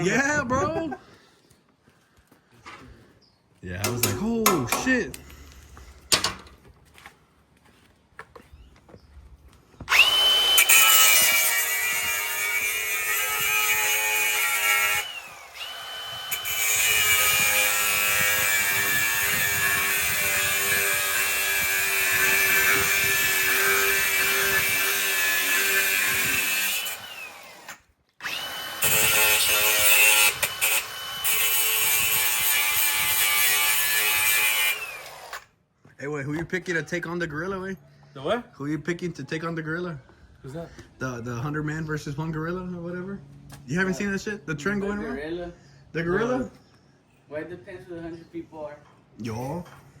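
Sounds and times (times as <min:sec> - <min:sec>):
power tool running at high speed: 0:09.9 - 0:11.4.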